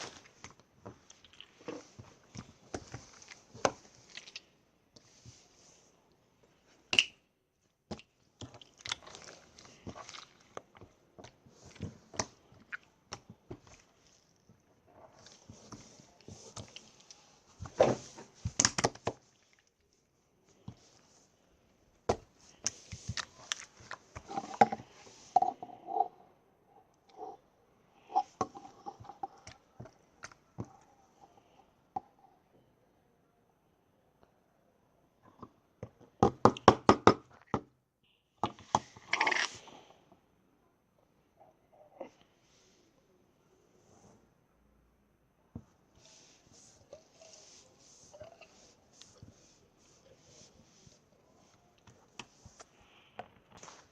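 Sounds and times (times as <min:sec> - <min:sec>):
slime crackling squelch: 0:07.9 - 0:25.2.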